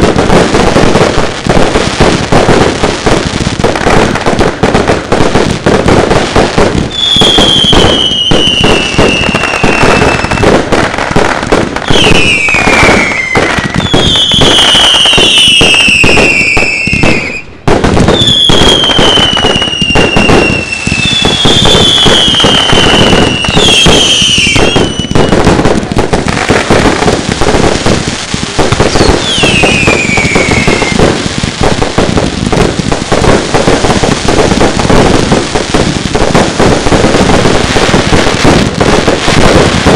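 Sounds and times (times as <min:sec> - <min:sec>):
firework bangs and crackling: 0:00.0 - 0:39.9
firework whistles sliding down: 0:06.9 - 0:10.5, 0:11.8 - 0:25.5, 0:28.8 - 0:31.1.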